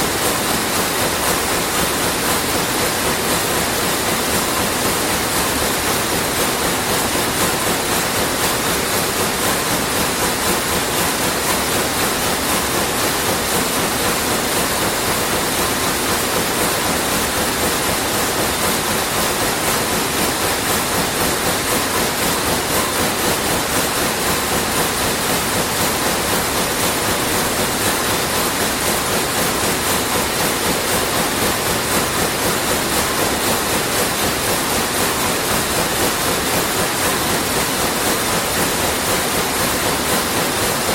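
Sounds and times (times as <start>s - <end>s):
weaving loom clattering: 0.0s - 40.9s.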